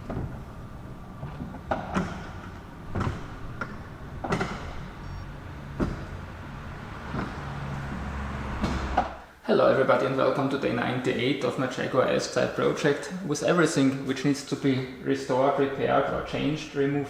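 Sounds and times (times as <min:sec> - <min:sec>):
irregular knocks and clunks: 0:00.0 - 0:09.2.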